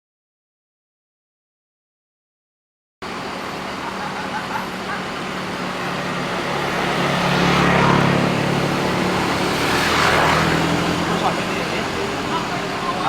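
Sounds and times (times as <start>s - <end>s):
diesel bus engine running: 3.0s - 13.0s.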